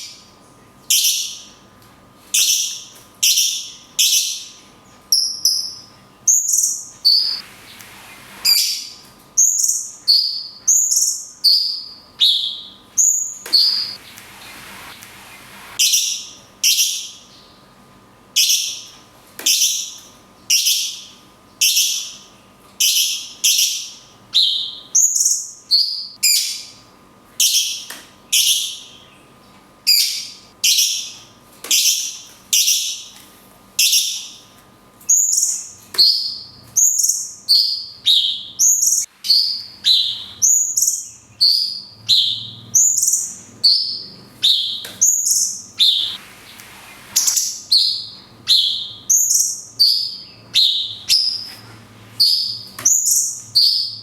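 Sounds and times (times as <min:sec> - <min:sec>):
high bird chirps: 0:05.2 - 0:17.6, 0:35.1 - 0:46.2, 0:47.2 - 0:51.6, 0:52.2 - 0:54.0.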